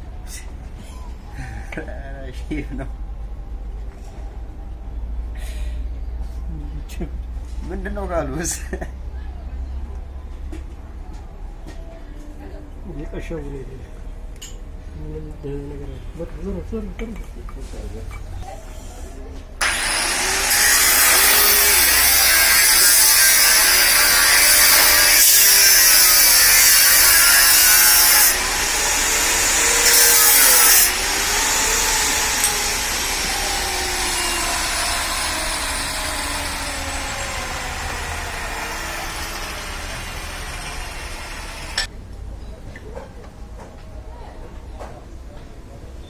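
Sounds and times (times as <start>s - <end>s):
power tool grinding: 19.6s - 41.9s.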